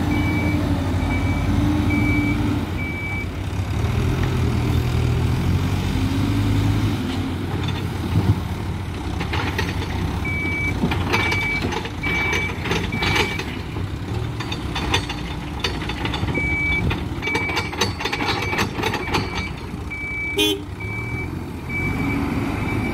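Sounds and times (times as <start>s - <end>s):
heavy diesel machinery running: 0.0s - 22.9s
reversing alarm beeping: 0.1s - 3.3s, 10.2s - 13.5s, 16.3s - 22.9s
metal clanks and knocks: 7.1s - 20.3s.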